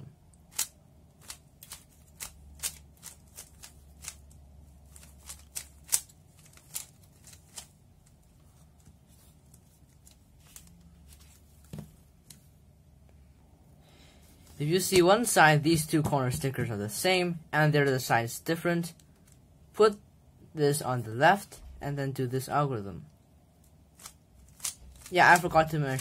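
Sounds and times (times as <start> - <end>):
puzzle cube plastic clicks: 0.3 - 8.3, 24.0 - 26.0.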